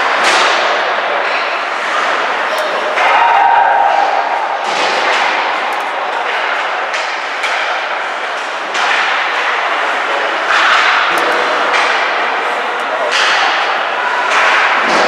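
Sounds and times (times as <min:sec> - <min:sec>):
hockey sticks and puck knocking boards: 0:00.0 - 0:03.3, 0:03.9 - 0:15.0.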